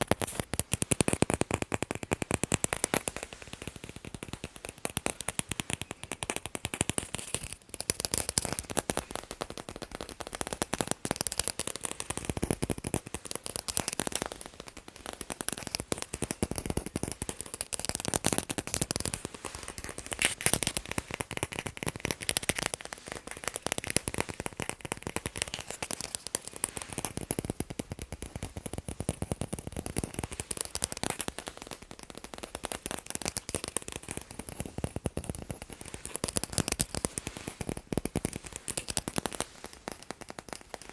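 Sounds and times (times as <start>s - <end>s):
fast tapping on balls: 0.0s - 40.9s.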